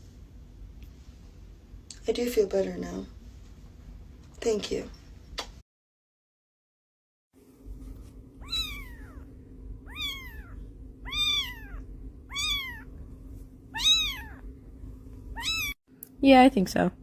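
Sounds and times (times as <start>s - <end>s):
steady low hum: 0.0s - 5.6s, 7.4s - 17.0s
cat meowing: 8.4s - 12.9s, 13.7s - 14.4s, 15.3s - 15.8s.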